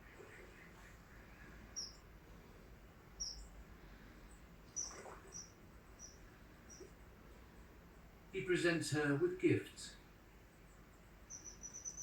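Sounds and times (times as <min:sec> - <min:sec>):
faint riverside background noise: 0:00.0 - 0:12.0
kingfisher chirping: 0:00.1 - 0:02.0, 0:03.2 - 0:03.5, 0:04.7 - 0:07.0, 0:11.2 - 0:12.0.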